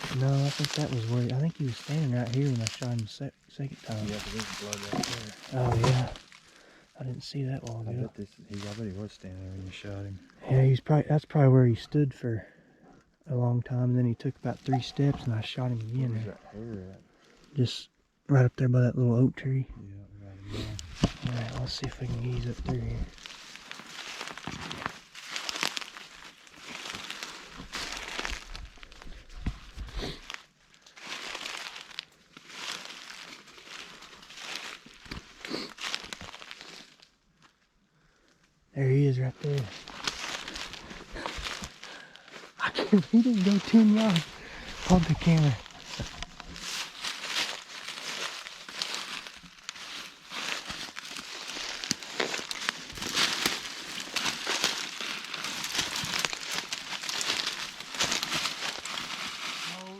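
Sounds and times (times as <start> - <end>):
footsteps through dry leaves: 0.0 - 3.0, 3.7 - 6.6, 22.1 - 37.1, 39.4 - 59.9.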